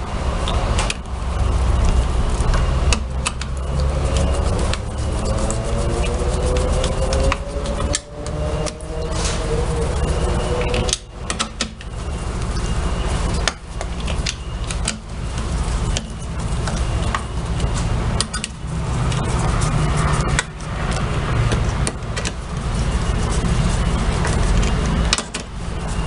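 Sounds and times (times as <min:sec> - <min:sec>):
low rumble: 0:00.0 - 0:11.2
rising hum: 0:00.0 - 0:14.5
tools and metal parts clicking: 0:18.2 - 0:18.6.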